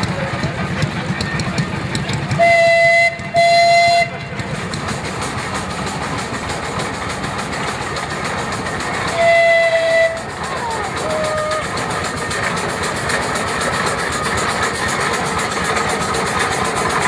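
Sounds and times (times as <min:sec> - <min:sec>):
steady rushing steam noise: 0:00.0 - 0:17.0
steam whistle blasts: 0:02.4 - 0:04.3, 0:09.1 - 0:11.8.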